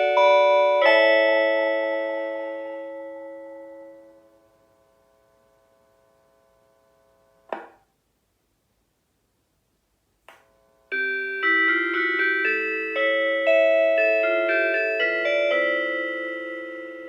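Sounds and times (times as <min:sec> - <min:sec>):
electronic train chime: 0:10.9 - 0:17.0.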